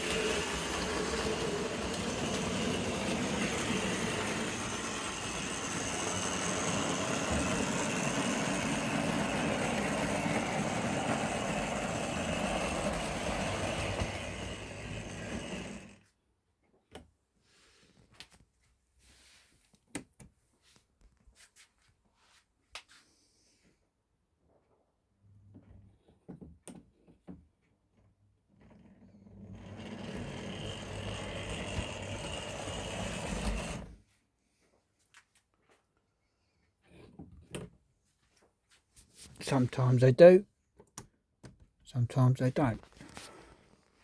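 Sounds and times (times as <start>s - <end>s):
model train motor whirring: 0.0s - 16.0s, 29.4s - 34.0s
wheels rattling over track: 0.0s - 16.0s, 29.5s - 33.9s.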